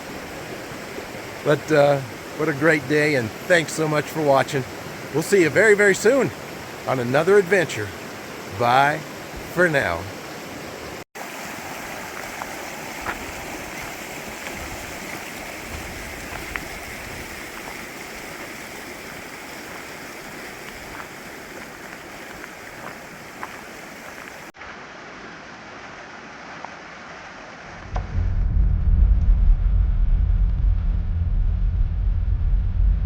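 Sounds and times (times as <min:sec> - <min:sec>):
small water splashes: 0:00.0 - 0:24.5
stream rushing over rocks: 0:00.0 - 0:27.8.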